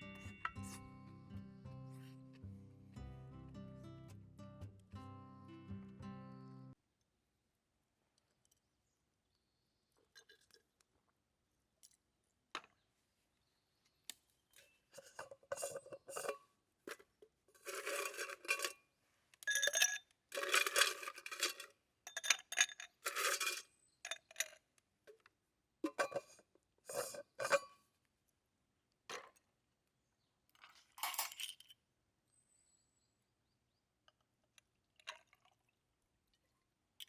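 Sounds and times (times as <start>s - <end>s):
metal cookware scraping and clinking: 15.0s - 17.0s, 17.6s - 18.8s, 19.5s - 24.4s, 25.9s - 27.8s.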